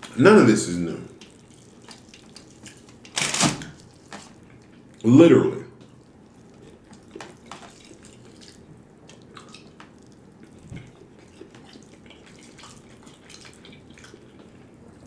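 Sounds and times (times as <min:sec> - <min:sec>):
wet mouth chewing food: 0:01.2 - 0:03.2, 0:05.8 - 0:15.0.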